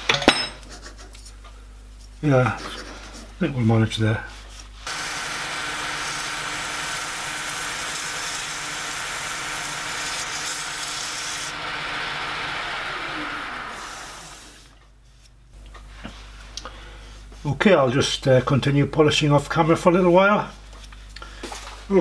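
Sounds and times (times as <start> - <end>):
lathe motor hum: 4.9 - 14.8.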